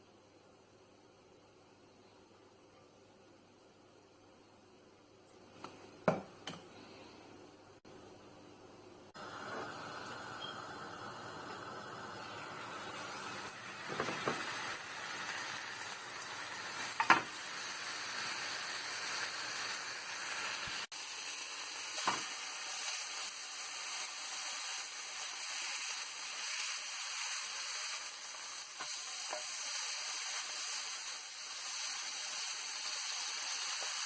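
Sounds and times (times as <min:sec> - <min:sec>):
chicken sizzling in a pan: 0:09.2 - 0:34.0.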